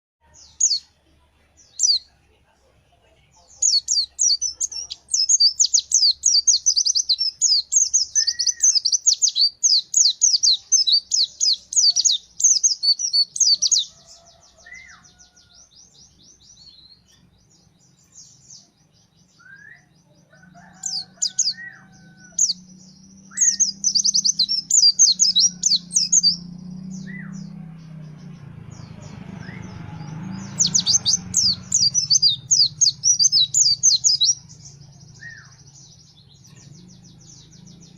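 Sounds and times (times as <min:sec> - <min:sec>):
bird chirps: 0:00.2 - 0:02.1, 0:03.3 - 0:37.9
bird chittering twitters: 0:03.6 - 0:14.3, 0:20.4 - 0:26.4, 0:30.4 - 0:35.7.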